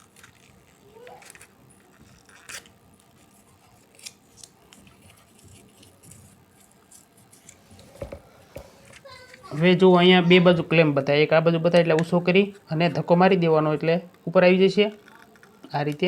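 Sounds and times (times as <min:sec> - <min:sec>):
label peeling: 0:00.0 - 0:08.0
plastic clicks and scrapes: 0:14.9 - 0:16.0.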